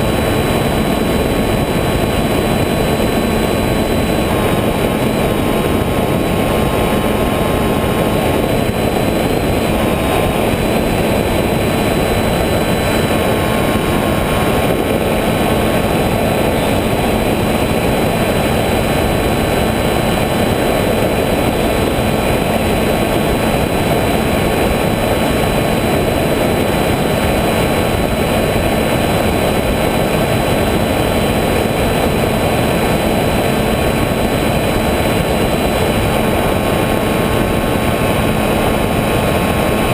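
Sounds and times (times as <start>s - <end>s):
model aircraft motor whine: 0.0s - 39.9s
rushing wind noise: 0.0s - 39.9s.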